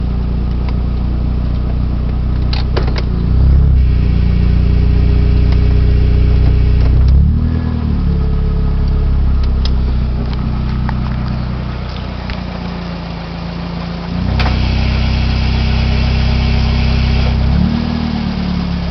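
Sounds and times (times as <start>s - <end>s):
car engine running: 0.0s - 18.9s.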